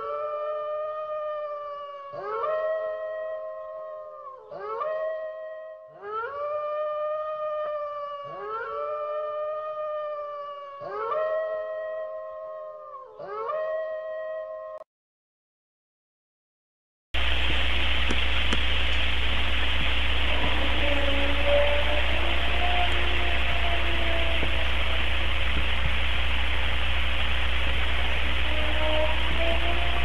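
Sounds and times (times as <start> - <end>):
wailing howls: 0.0 - 14.8, 19.9 - 26.1, 27.4 - 30.0.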